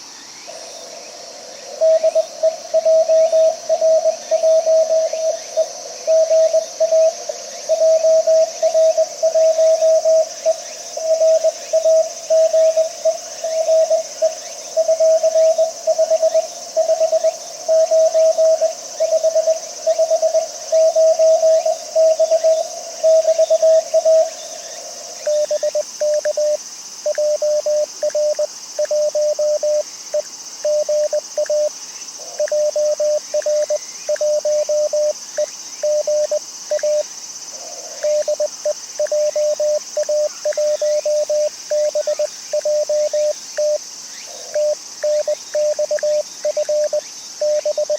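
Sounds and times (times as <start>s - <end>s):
morse code beeps: 35.9s - 37.0s, 44.6s - 47.9s.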